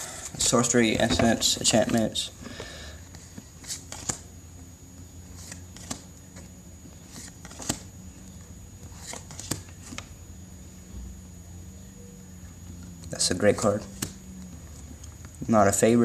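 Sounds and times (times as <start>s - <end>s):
playing cards flicking and tapping: 0.4s - 4.3s, 5.3s - 10.1s, 12.8s - 15.4s.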